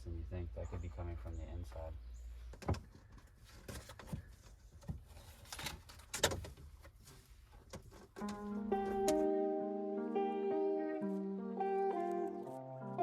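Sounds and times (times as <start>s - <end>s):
knocks and clicks of handling: 7.6s - 9.3s
background music: 8.2s - 13.0s.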